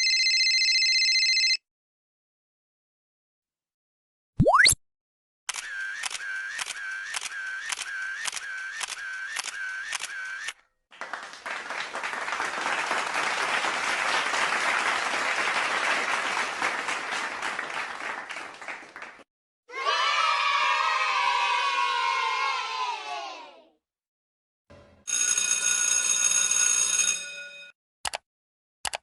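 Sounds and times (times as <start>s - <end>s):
applause: 10.9s - 19.3s
run of clicks: 28.0s - 28.2s.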